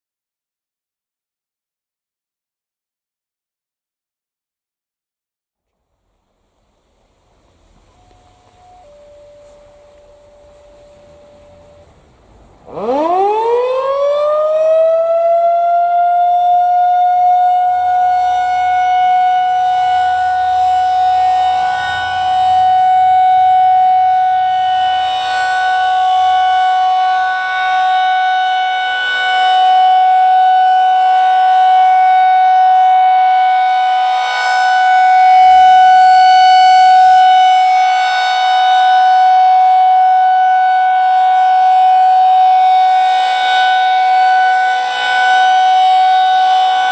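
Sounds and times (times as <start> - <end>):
rotating storm siren wailing: 7.5 - 46.9.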